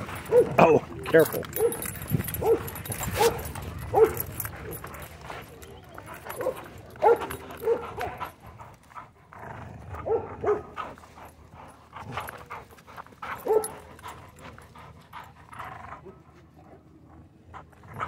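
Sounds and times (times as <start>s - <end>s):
dogs barking: 0.0s - 8.4s, 10.0s - 11.0s, 13.2s - 14.4s.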